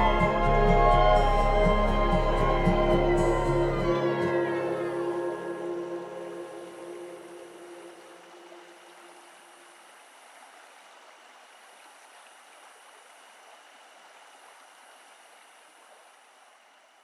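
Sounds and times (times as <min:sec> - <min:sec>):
held low music note: 0:00.0 - 0:08.2
thin high tones: 0:00.0 - 0:08.2
faint steady hiss: 0:00.0 - 0:17.0.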